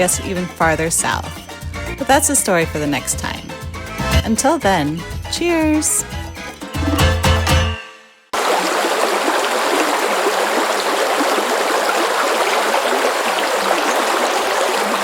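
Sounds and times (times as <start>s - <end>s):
running water rushing: 8.4s - 15.0s.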